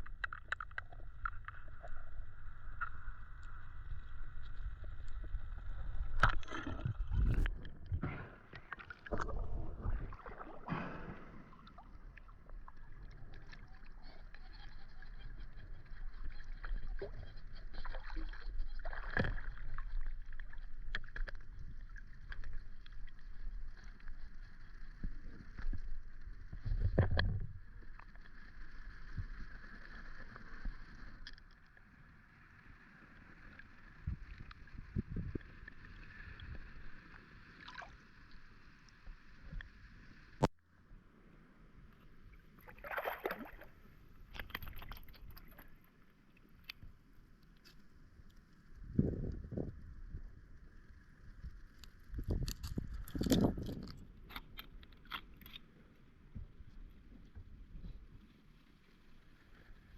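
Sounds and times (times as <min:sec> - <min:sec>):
water sloshing: 0:06.2 - 0:14.2, 0:42.5 - 0:45.9.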